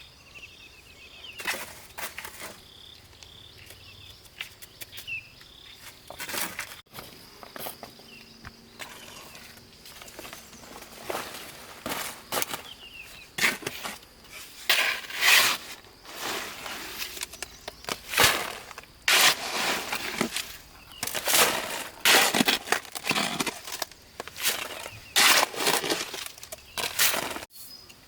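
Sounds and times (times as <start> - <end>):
stones crunching and scraping: 3.6 - 27.5.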